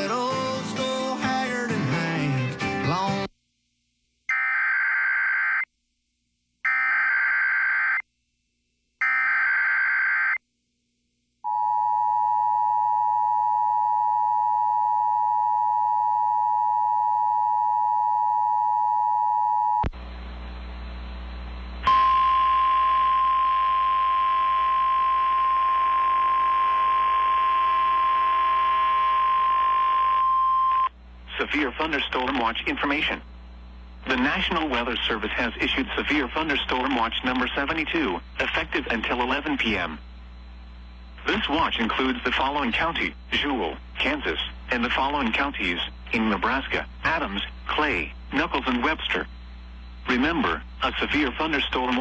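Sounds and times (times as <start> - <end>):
radio hum and static: 19.2 - 52.0
single-pitch warning alarm tone: 21.8 - 30.9.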